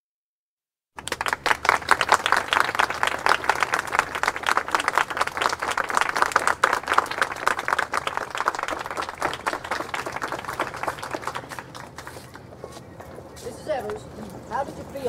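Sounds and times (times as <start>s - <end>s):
crowd applauding: 1.0s - 12.5s.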